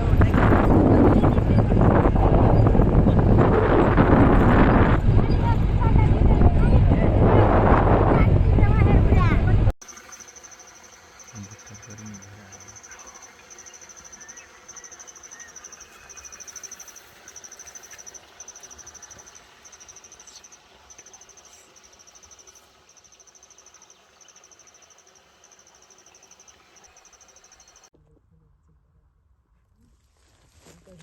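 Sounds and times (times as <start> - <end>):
insect pulsed trills: 9.8 - 27.9.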